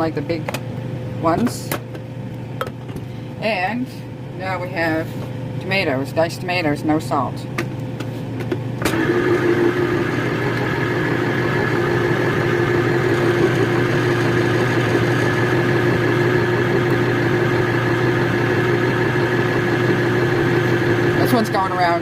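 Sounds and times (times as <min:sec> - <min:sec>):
electric can opener humming: 0:08.7 - 0:22.0.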